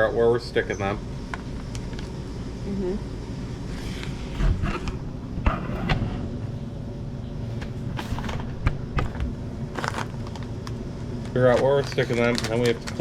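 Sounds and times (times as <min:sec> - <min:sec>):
low background rumble: 0:00.0 - 0:13.0
objects being handled: 0:07.5 - 0:13.0.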